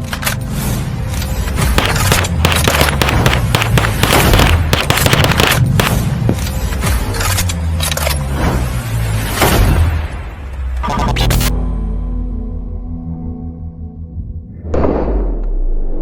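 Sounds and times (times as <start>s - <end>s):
rapid pistol gunfire: 1.8s - 6.3s.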